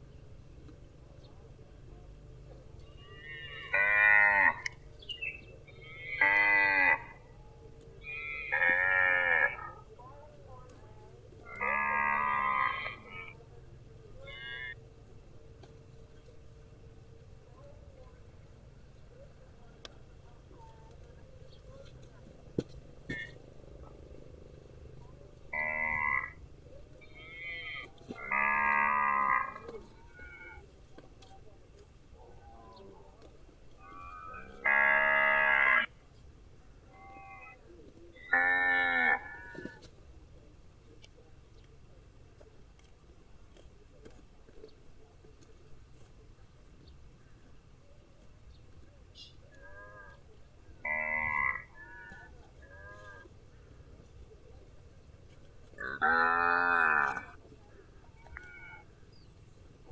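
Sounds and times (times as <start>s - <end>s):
cattle mooing: 3.1s - 4.8s, 5.8s - 7.2s, 8.1s - 9.8s, 11.4s - 13.4s, 25.5s - 26.4s, 27.2s - 30.6s, 33.9s - 35.9s, 38.2s - 39.8s, 50.8s - 53.3s, 55.8s - 57.4s.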